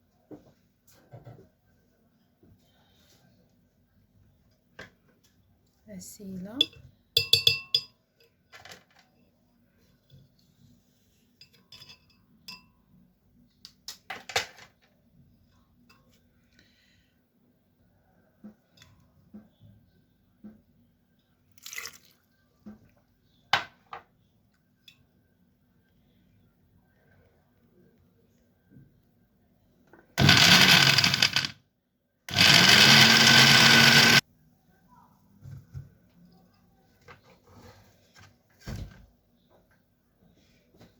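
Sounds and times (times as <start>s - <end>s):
glass and metal utensils clinking: 6.6s - 7.9s, 11.4s - 12.7s
electric blender chopping: 30.2s - 31.6s, 32.3s - 34.2s.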